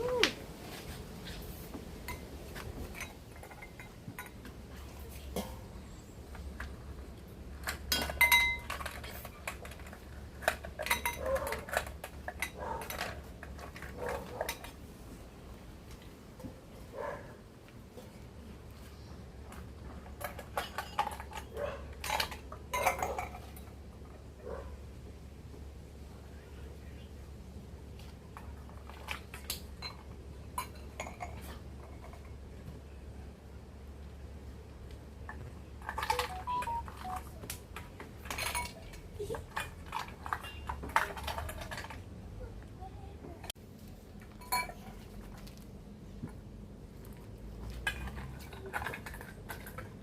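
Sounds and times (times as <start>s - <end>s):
dishes and cutlery clinking: 2.1s - 4.4s, 7.6s - 14.7s, 20.1s - 23.8s, 28.8s - 32.3s, 35.8s - 37.3s, 38.2s - 42.0s, 44.3s - 45.0s.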